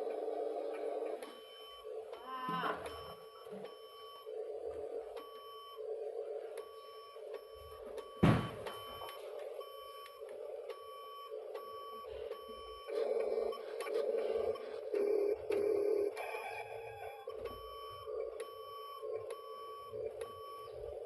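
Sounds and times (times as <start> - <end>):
motor hum: 0.0 - 21.0
reverse warning beeps: 0.1 - 21.0
sharp knock: 8.2 - 8.6.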